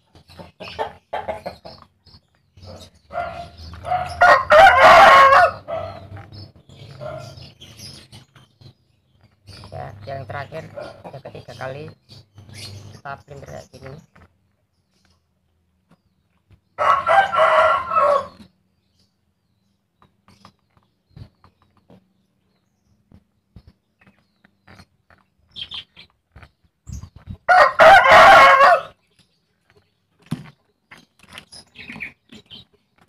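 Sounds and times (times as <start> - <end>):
chicken calling loudly: 3.1 - 6.0, 27.5 - 28.9.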